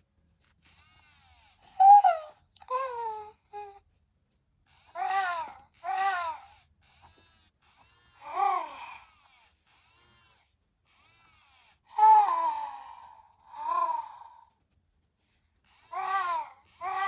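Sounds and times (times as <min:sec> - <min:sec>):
toy baby-like cooing cries: 0:00.8 - 0:03.8, 0:04.7 - 0:07.2, 0:07.8 - 0:09.4, 0:11.4 - 0:12.9, 0:13.5 - 0:14.3, 0:15.7 - 0:17.0.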